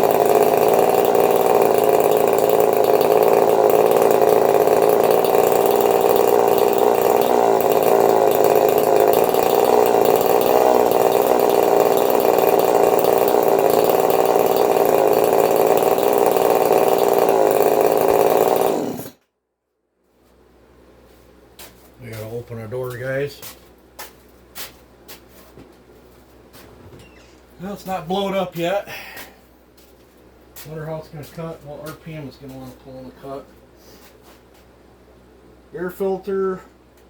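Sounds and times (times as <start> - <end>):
two-stroke chainsaw engine running: 0.0 - 19.2.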